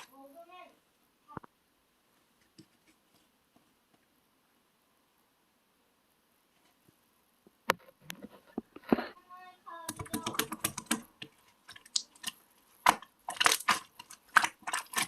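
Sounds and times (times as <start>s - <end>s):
slime clicking and popping: 9.9s - 15.0s.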